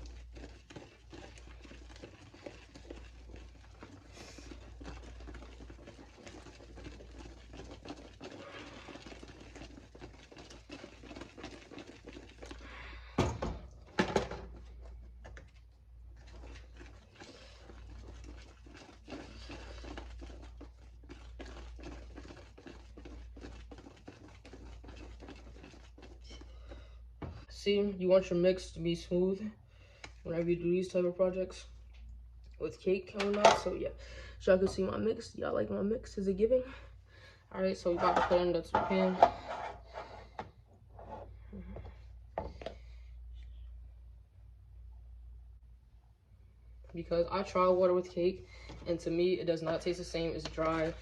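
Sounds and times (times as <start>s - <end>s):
whisk scraping in a bowl: 0.0s - 12.6s, 16.2s - 26.6s, 37.8s - 40.4s, 48.7s - 51.0s.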